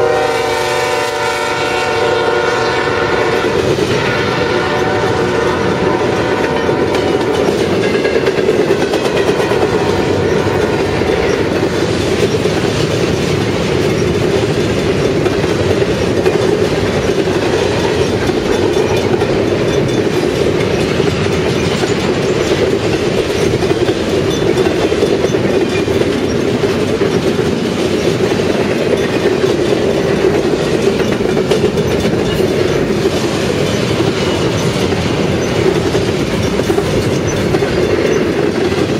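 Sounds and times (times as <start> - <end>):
locomotive horn: 0.0 - 7.4
train wheels rumbling on rails: 0.0 - 38.9.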